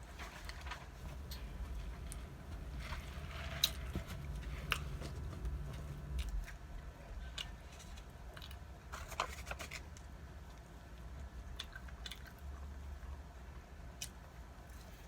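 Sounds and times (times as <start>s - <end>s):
chewing and smacking: 0.4s - 6.7s, 10.5s - 13.2s
low hum: 0.7s - 8.1s.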